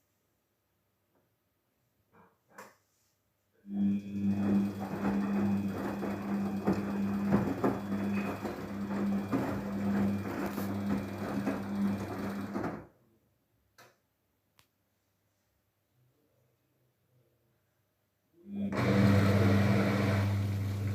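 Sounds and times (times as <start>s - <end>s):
washing machine drain pump humming: 3.7s - 12.8s, 18.5s - 20.9s.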